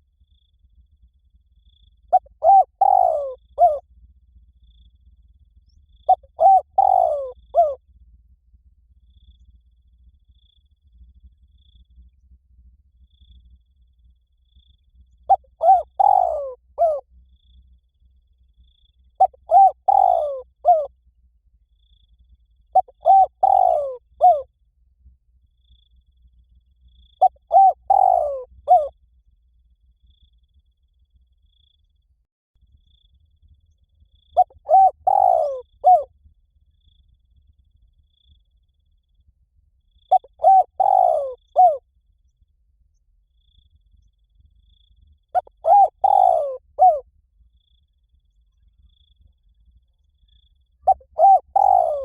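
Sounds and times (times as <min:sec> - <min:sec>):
dove cooing: 0:02.1 - 0:03.8, 0:06.0 - 0:07.8, 0:15.3 - 0:17.0, 0:19.2 - 0:20.9, 0:22.7 - 0:24.5, 0:27.2 - 0:28.9, 0:34.4 - 0:36.1, 0:40.1 - 0:41.8, 0:45.3 - 0:47.0, 0:50.8 - 0:52.0.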